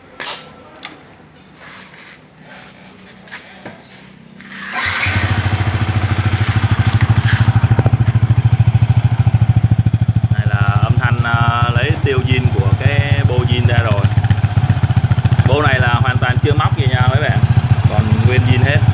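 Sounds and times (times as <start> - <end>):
motorcycle engine idling: 4.7 - 18.9.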